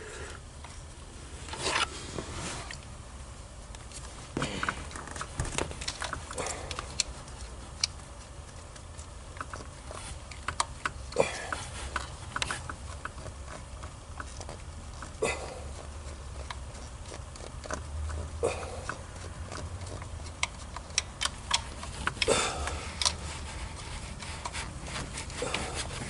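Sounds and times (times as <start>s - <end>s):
steady low hum: 0.0s - 26.0s
small metallic clicks and taps: 18.9s - 22.3s.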